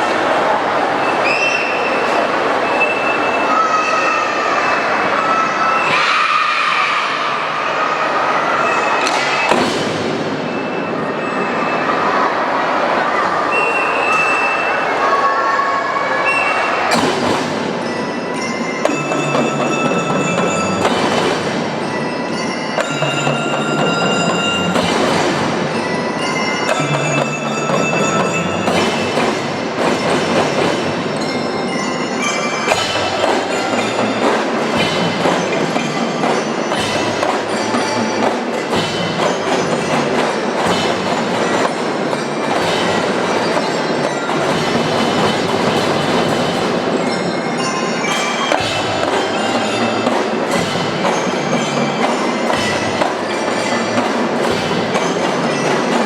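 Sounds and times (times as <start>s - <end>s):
ringing glockenspiel: 8.0s - 56.0s
marching drums beating: 18.9s - 31.8s, 32.7s - 56.0s.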